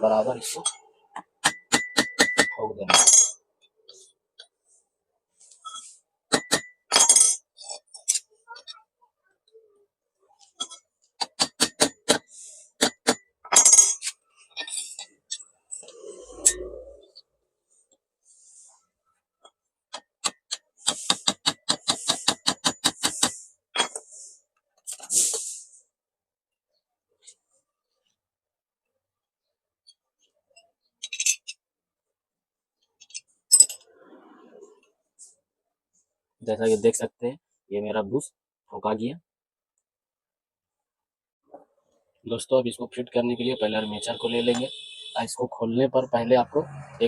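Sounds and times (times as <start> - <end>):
hammer tapping metal: 1.4 - 3.1
tools clinking: 5.6 - 8.3, 12.8 - 15.9, 33.0 - 33.8.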